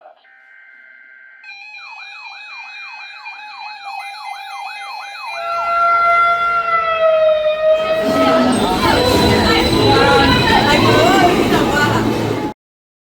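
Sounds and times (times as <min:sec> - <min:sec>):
electronic siren yelping: 0:00.4 - 0:11.4.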